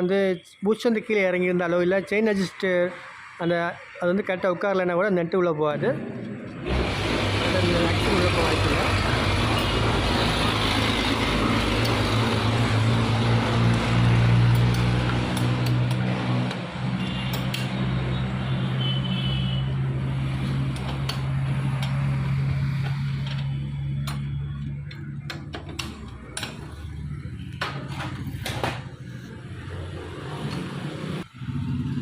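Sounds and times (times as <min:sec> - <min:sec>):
loud motor hum: 0:06.6 - 0:17.2
sharp metallic clicks: 0:14.5 - 0:16.6, 0:17.3 - 0:17.8, 0:20.7 - 0:22.0, 0:22.8 - 0:26.7.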